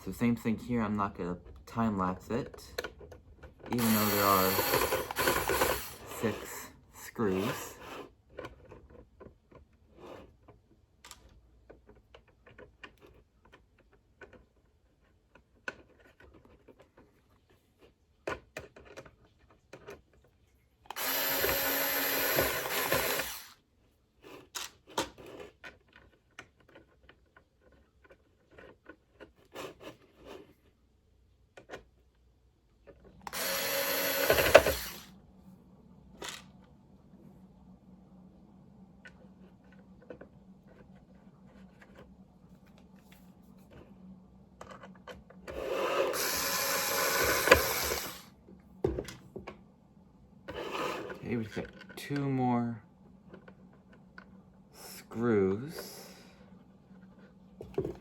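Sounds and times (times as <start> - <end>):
screw gun driving screws: 3.7 - 6.6, 20.9 - 23.6, 33.3 - 35.1, 45.8 - 48.3.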